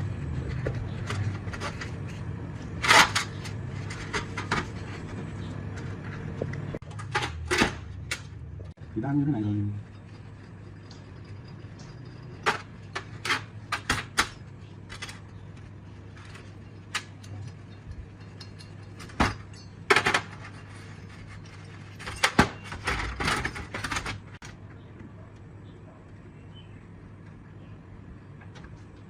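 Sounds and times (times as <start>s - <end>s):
steady low hum: 0.0s - 29.0s
metal parts and tools clinking: 9.4s - 24.4s.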